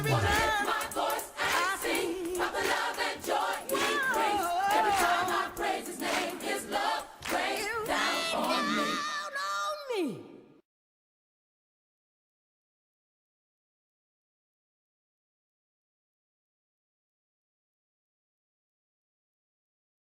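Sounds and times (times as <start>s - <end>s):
gospel choir singing: 0.0s - 9.4s.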